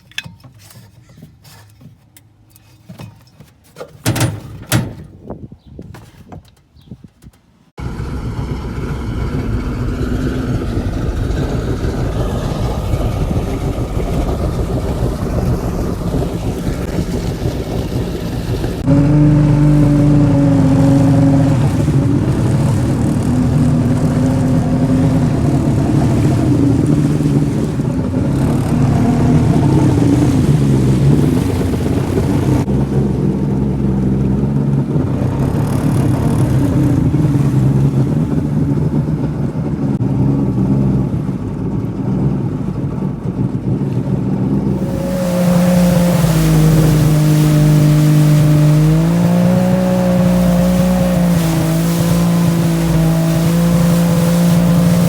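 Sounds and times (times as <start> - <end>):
jet ski engine running: 7.8 - 55.0.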